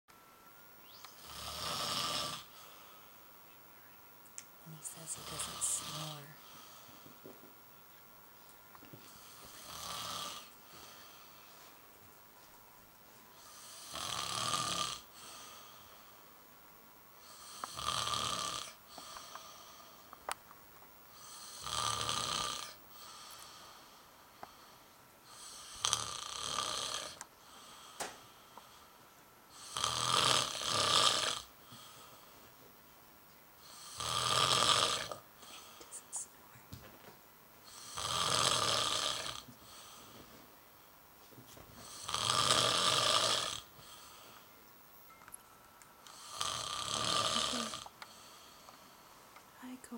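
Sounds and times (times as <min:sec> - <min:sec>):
quiet breathing: 0:01.1 - 0:26.0, 0:26.9 - 0:33.0, 0:33.6 - 0:36.8, 0:37.6 - 0:49.9
man snoring: 0:01.2 - 0:03.0, 0:04.9 - 0:07.1, 0:09.0 - 0:11.3, 0:13.4 - 0:16.2, 0:17.2 - 0:20.1, 0:21.2 - 0:23.9, 0:25.3 - 0:28.8, 0:29.5 - 0:32.2, 0:33.6 - 0:35.8, 0:37.7 - 0:40.1, 0:41.8 - 0:44.4, 0:46.0 - 0:48.7.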